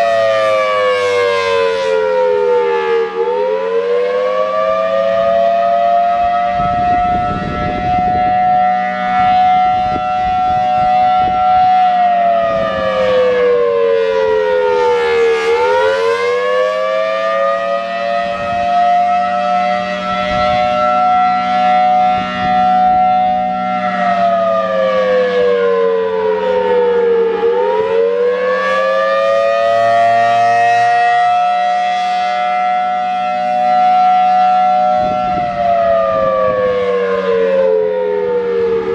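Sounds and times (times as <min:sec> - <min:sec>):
warning siren: 0:00.0 - 0:38.9.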